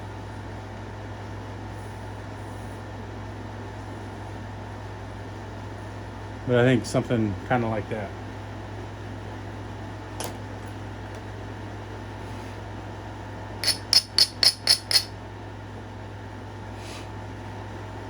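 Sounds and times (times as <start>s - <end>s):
low room hum: 0.0s - 18.0s.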